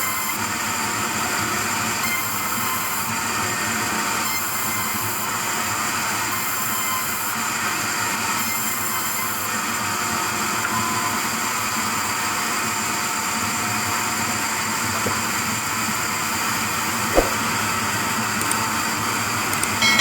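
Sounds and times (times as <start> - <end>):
sharp knock: 17.1 - 17.4.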